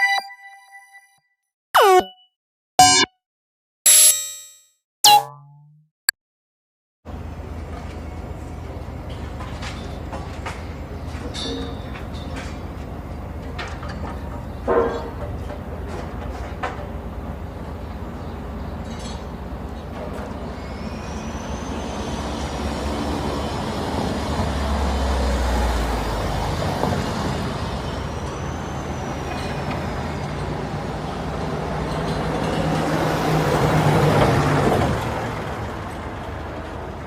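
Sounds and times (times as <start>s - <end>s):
heavy vehicle traffic rumble: 7.1s - 37.0s
faint high whistling tones: 20.5s - 22.6s.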